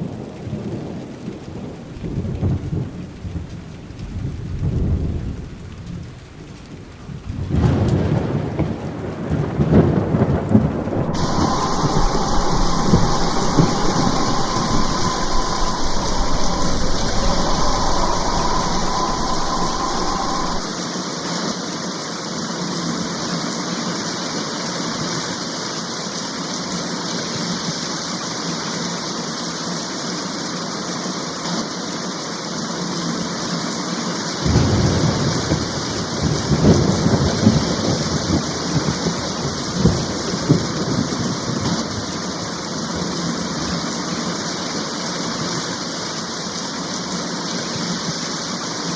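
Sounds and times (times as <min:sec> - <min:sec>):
heavy rain falling: 0:00.0 - 0:48.9
thunder rumbling: 0:07.2 - 0:20.7, 0:34.4 - 0:43.2.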